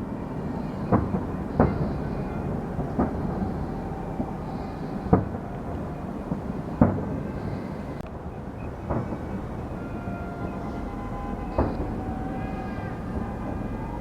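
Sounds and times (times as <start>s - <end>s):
fireworks booming: 0.0s - 14.0s
rumble of fireworks bursts: 0.0s - 14.0s.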